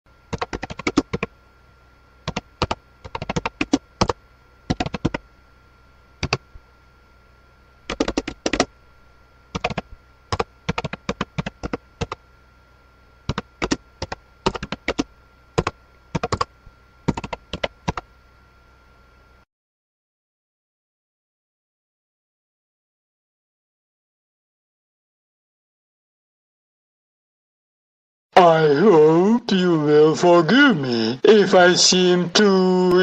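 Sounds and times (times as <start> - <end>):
faint hum: 0.1 - 19.5, 28.3 - 33.0.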